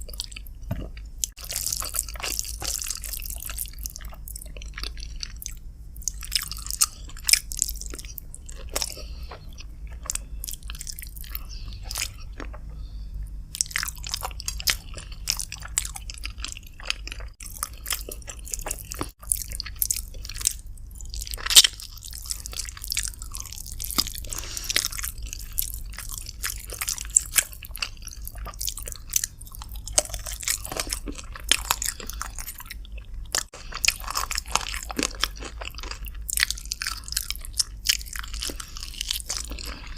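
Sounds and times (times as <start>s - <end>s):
person chewing food: 0.0s - 39.9s
steady low hum: 0.0s - 39.9s.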